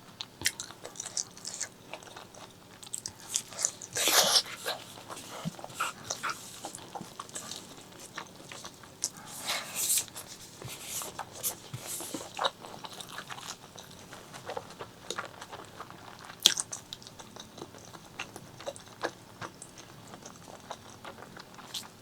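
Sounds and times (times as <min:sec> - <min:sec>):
wet chewing and lip-smacking: 0:00.2 - 0:22.0
loud wet mouth noises: 0:03.0 - 0:07.7.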